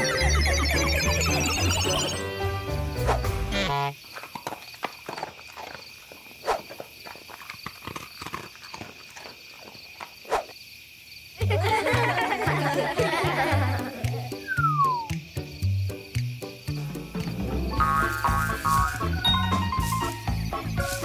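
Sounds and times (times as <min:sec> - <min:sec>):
background music: 0:00.0 - 0:03.8, 0:11.5 - 0:21.0.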